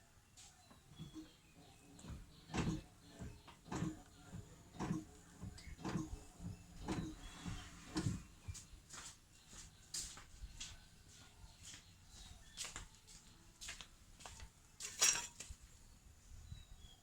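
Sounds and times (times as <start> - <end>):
brake pedal knocking: 0.7 - 8.3.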